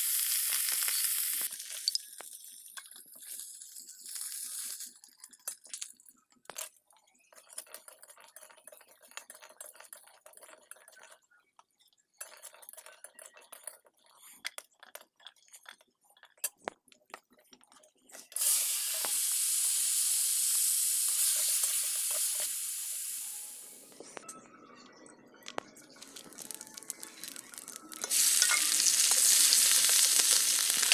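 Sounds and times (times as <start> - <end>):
food sizzling in hot oil: 0.0 - 5.0, 18.4 - 23.9, 26.0 - 30.9.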